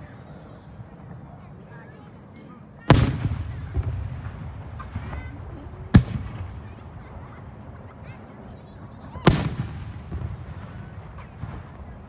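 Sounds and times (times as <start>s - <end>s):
firework shells booming: 2.9s - 7.6s, 9.0s - 12.0s.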